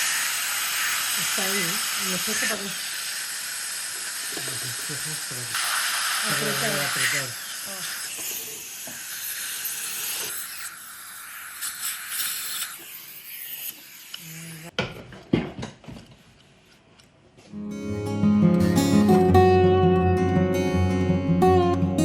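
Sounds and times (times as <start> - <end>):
dental equipment hissing: 0.0 - 14.7
acoustic guitar music: 17.5 - 22.0.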